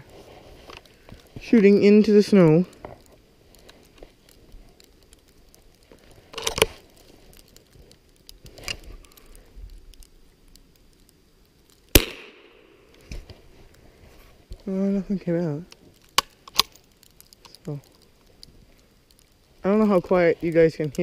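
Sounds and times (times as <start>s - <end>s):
rifle handling clicks and rustles: 2.7s - 9.3s, 15.7s - 19.3s
rifle shot crack: 11.9s - 12.9s.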